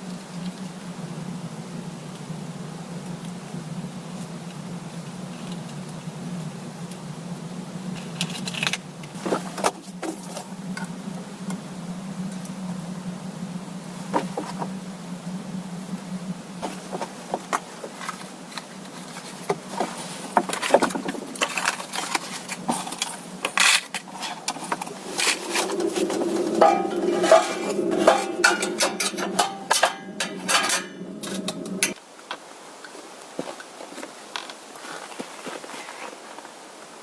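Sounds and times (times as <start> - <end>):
objects being handled: 16.6 - 32.0
steady low hum: 22.4 - 32.0.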